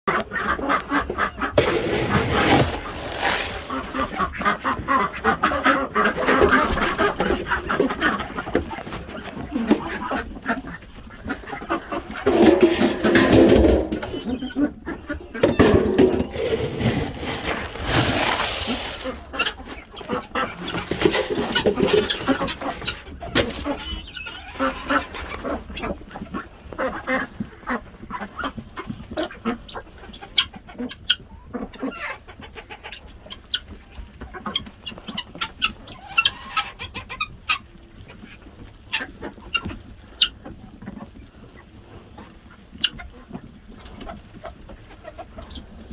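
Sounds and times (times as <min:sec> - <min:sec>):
chickens clucking: 0:00.1 - 0:45.9.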